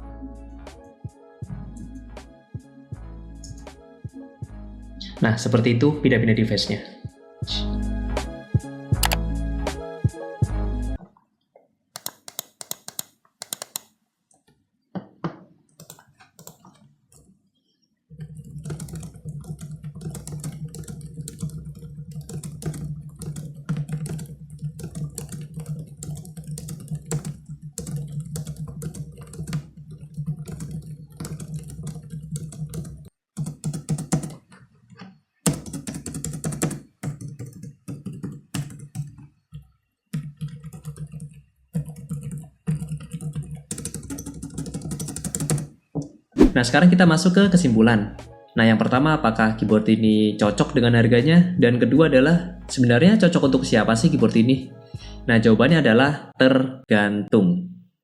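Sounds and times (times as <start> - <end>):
keyboard key clicks: 9.0 - 9.2, 12.0 - 13.9.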